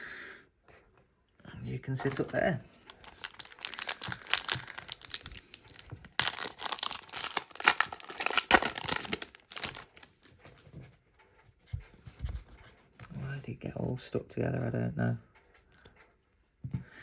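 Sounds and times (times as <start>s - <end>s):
foil wrapper crinkling and tearing: 2.0s - 10.3s.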